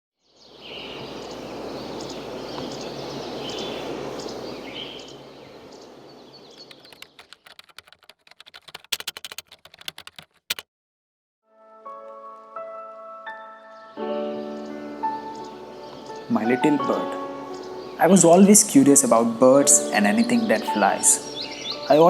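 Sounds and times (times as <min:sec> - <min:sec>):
outdoor background noise: 0:00.2 - 0:07.3
keyboard clicks: 0:06.6 - 0:10.6.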